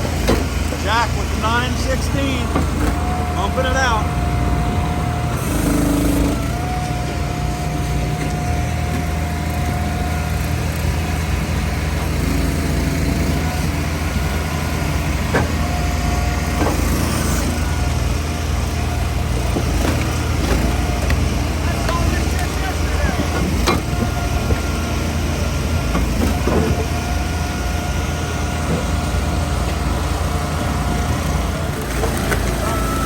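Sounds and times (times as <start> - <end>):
engine running steadily: 0.0 - 33.0.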